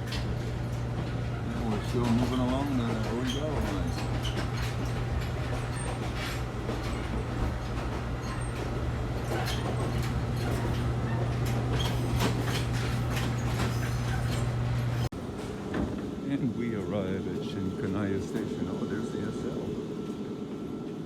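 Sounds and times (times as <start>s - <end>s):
wheels clicking on rails: 0.0s - 15.6s
train running on rails: 0.0s - 21.0s.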